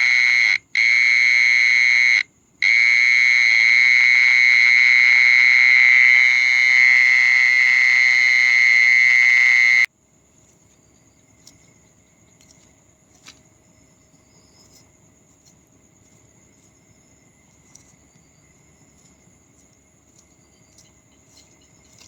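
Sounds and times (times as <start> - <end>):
high-pitched electronic alarm tone: 0.0 - 9.9.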